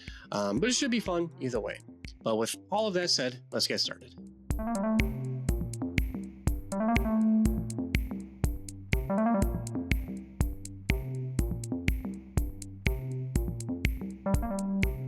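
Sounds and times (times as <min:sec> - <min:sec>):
drum machine beat: 0:00.0 - 0:02.3, 0:04.5 - 0:15.0
synthesizer chords and melody: 0:04.5 - 0:15.0.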